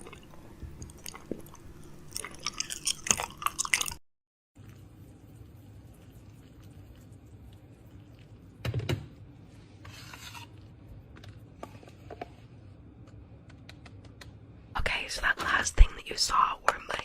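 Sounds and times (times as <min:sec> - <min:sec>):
objects rubbing and scraping: 0:09.5 - 0:10.7.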